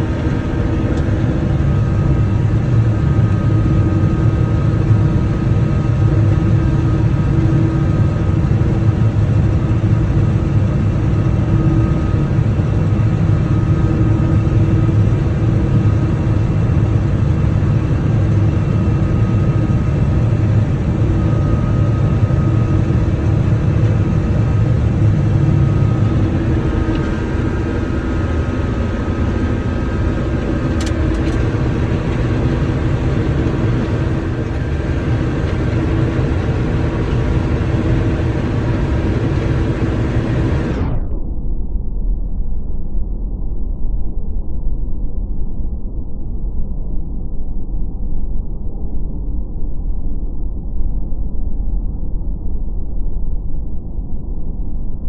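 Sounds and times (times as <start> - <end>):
combine engine drone: 0.0 - 55.0
steady whine: 0.0 - 55.0.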